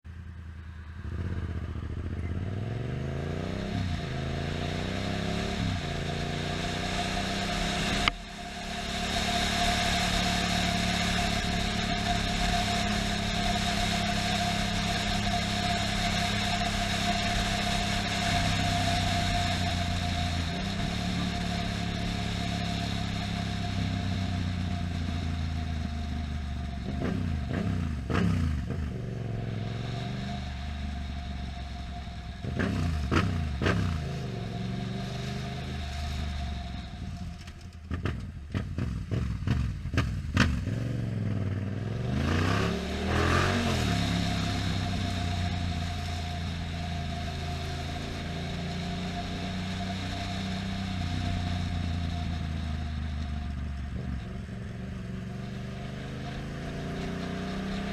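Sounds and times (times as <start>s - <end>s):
motorcycle engine revving: 0.0s - 57.9s.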